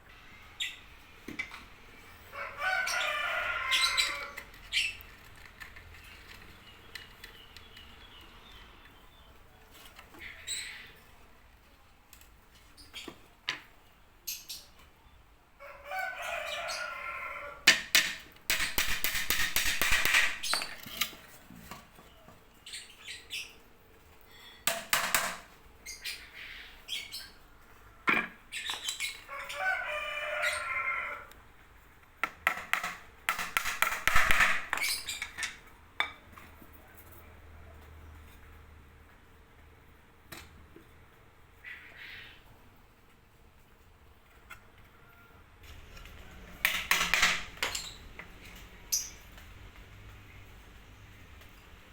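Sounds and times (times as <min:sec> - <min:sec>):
rooster crowing: 0:02.3 - 0:04.5, 0:15.6 - 0:17.7, 0:29.3 - 0:31.4.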